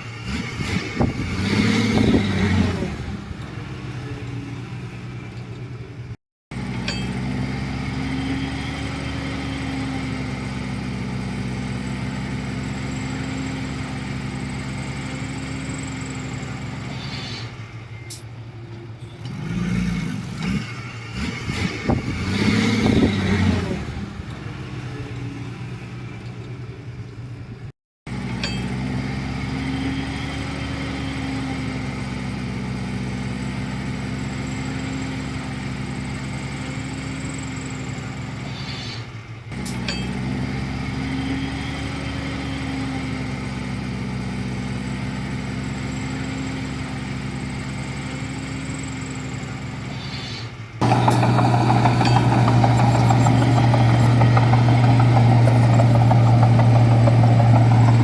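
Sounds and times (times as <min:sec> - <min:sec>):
bulldozer diesel engine running: 0:00.0 - 0:20.3, 0:21.1 - 0:58.0
rumbling and clatter: 0:50.8 - 0:58.0.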